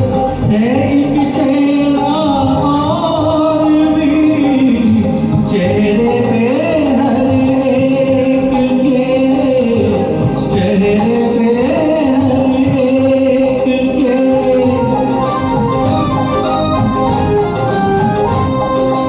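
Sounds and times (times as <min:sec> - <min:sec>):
instrumental accompaniment: 0:00.0 - 0:19.0
sliding melody line: 0:00.0 - 0:19.0.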